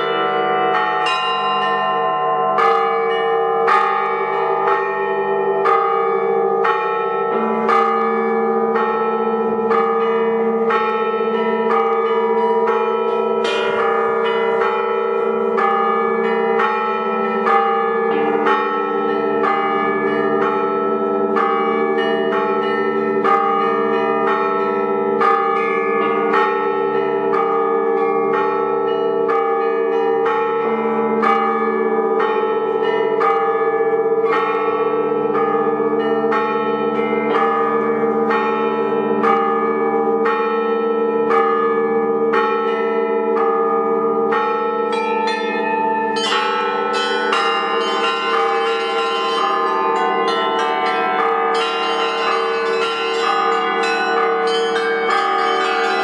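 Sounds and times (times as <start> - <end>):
hum of large bells: 0.0 - 56.0
small bells pealing: 44.3 - 56.0.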